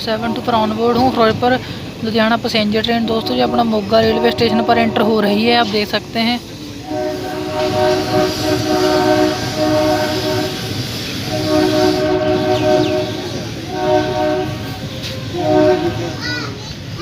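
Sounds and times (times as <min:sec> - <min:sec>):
moving train rumble: 0:00.0 - 0:17.0
locomotive horn blasts: 0:03.0 - 0:05.6, 0:06.8 - 0:16.5.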